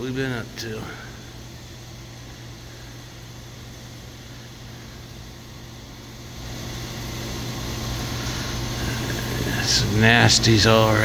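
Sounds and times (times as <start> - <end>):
machine hum with hiss: 0.0 - 11.0.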